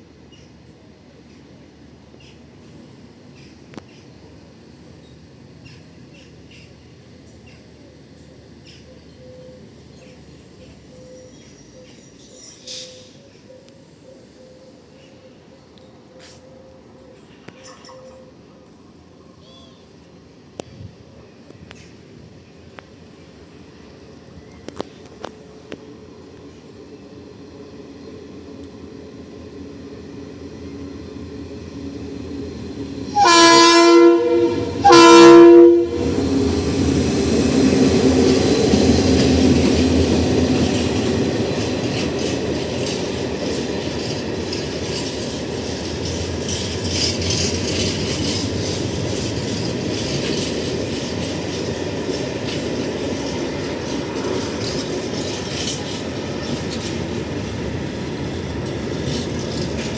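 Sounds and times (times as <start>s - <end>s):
train rumbling: 0.0s - 59.9s
wheels clicking over rail joints: 23.8s - 59.9s
train horn blasts: 33.1s - 36.6s.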